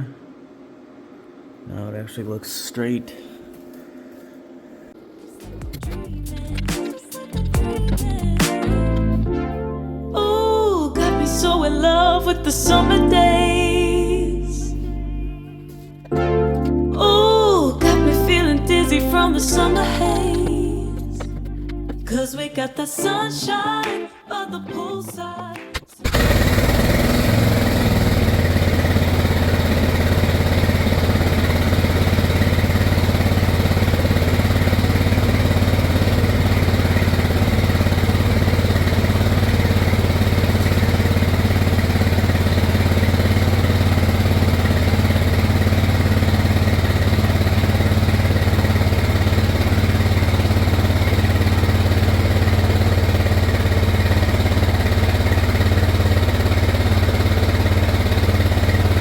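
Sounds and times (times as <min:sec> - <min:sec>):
small gas engine running: 0:26.0 - 0:59.0.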